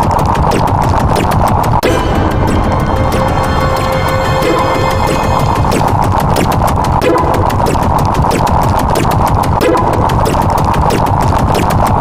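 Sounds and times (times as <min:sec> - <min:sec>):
held tone: 0:01.8 - 0:07.8
dark synthesized sound effects: 0:01.8 - 0:08.6.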